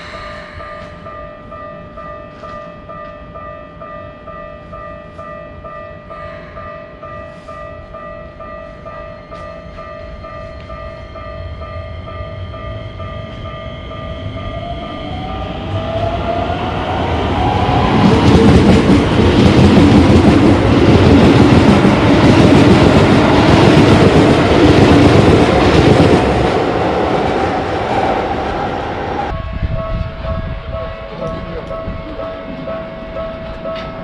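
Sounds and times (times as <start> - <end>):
railroad crossing warning bell: 0.0 - 34.0
train rumble and wheel clatter: 0.0 - 34.0
rising tone: 11.0 - 31.0.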